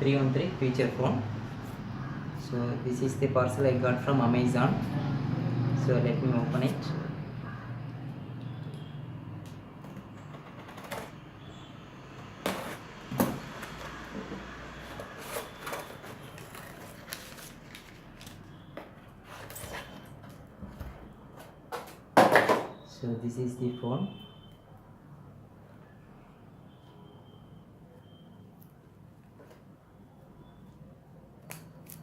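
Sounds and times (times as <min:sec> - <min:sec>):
packaging rustling: 0:14.8 - 0:18.5.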